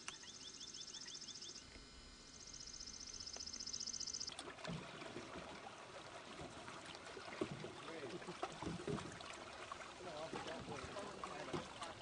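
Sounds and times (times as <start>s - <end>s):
water lapping against hulls: 4.2s - 12.0s
paddles dipping in water: 4.3s - 12.0s.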